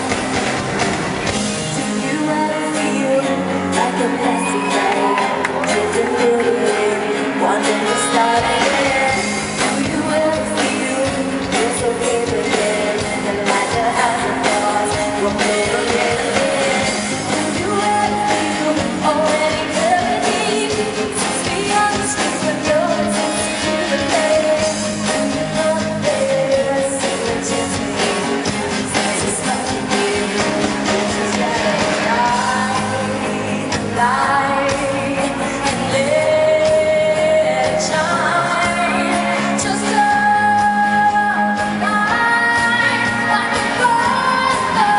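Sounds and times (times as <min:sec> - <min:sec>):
drums steady beat: 0:00.0 - 0:02.0, 0:08.4 - 0:34.1
live pop-rock band: 0:00.0 - 0:44.9
woman singing: 0:01.7 - 0:44.9.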